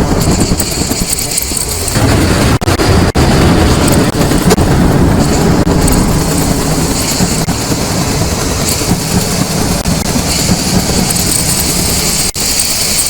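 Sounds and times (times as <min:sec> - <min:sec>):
low mechanical rumble: 0:00.0 - 0:13.0
hiss: 0:05.2 - 0:13.0.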